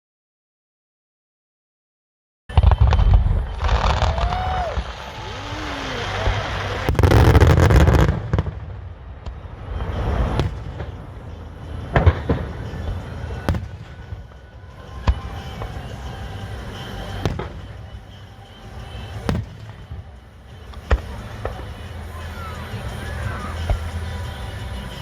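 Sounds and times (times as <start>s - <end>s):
fireworks bangs echoing: 2.5s - 21.9s.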